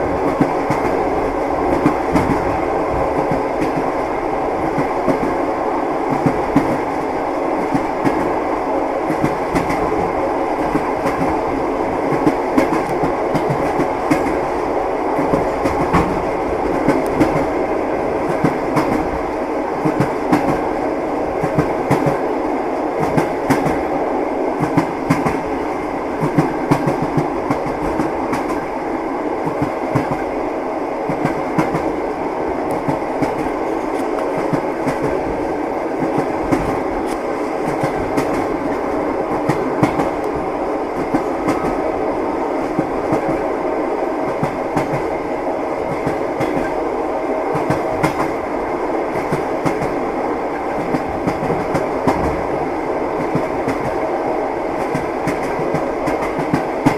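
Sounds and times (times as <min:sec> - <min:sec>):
moving train rumble: 0:00.0 - 0:56.9
train wheels clacking over rail joints: 0:45.9 - 0:46.8.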